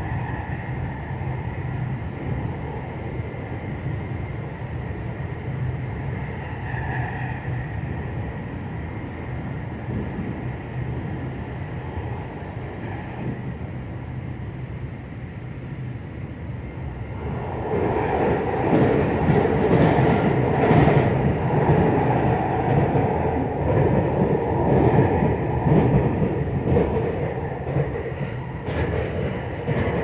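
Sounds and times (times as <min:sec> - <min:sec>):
electric train rumble: 0:00.0 - 0:30.0
train wheels clicking: 0:18.7 - 0:30.0.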